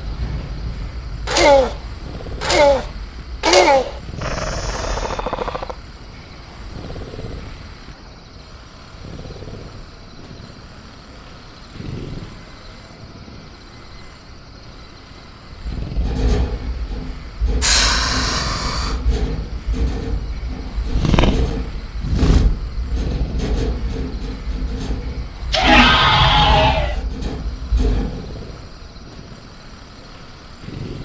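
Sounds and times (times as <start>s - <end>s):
loud hiss: 0.0s - 7.9s, 17.0s - 19.6s
deep rumble: 0.0s - 10.7s, 15.4s - 31.0s
rasping creature growl: 1.2s - 5.8s, 17.5s - 19.6s, 20.3s - 23.8s, 25.5s - 27.1s, 30.6s - 31.0s.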